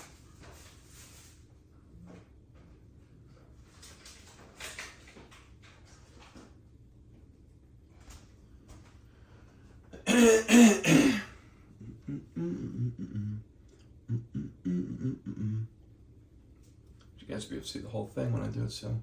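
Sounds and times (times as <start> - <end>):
loud burst of vocal noise: 14.1 - 15.7
man beatboxing: 14.1 - 15.7.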